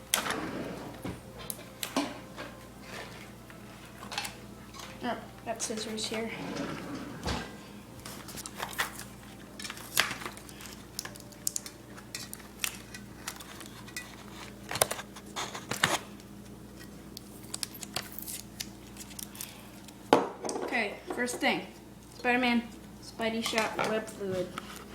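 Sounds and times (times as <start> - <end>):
scissors cutting packaging: 8.3 - 16.1, 16.8 - 19.6.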